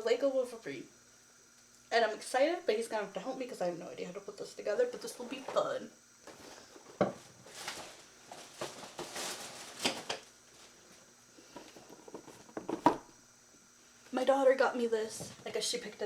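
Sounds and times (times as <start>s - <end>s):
objects rustling: 5.1s - 13.1s.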